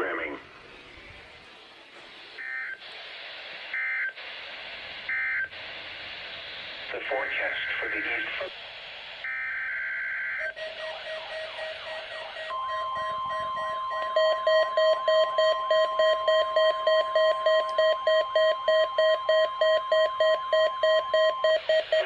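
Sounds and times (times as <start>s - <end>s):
weather radio alarm beeping: 2.4s - 2.9s, 7.0s - 8.5s, 9.2s - 22.0s
steady warning alarm tone: 9.2s - 22.0s.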